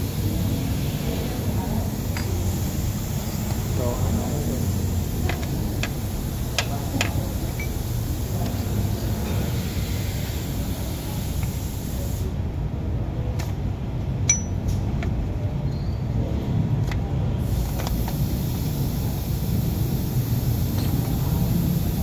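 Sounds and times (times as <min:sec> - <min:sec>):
metallic clinks of tools: 0:14.3 - 0:14.8.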